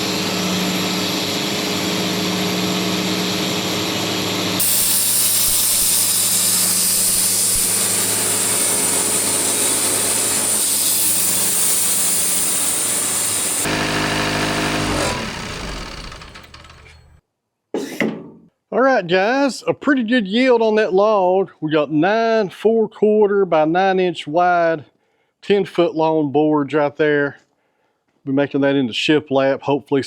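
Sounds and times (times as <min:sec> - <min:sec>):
sawmill engine running: 0:00.0 - 0:17.2
band blade hissing through log: 0:04.6 - 0:16.0.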